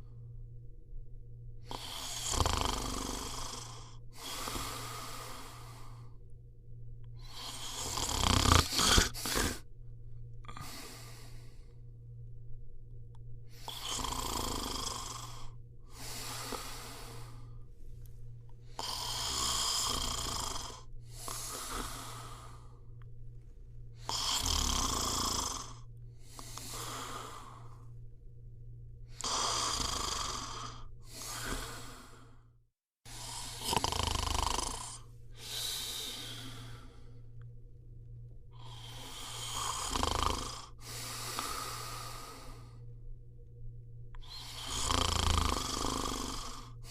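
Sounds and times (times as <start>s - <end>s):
steady low hum: 0.0s - 46.9s
person snoring: 1.6s - 6.2s, 7.2s - 9.7s, 10.4s - 11.8s, 13.5s - 17.6s, 18.6s - 22.9s, 24.0s - 27.9s, 29.1s - 32.4s, 33.1s - 37.3s, 38.5s - 42.9s, 44.2s - 46.9s.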